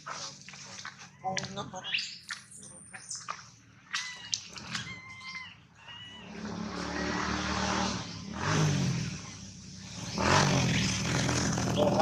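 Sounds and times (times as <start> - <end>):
vehicle passing: 6.2 - 12.0.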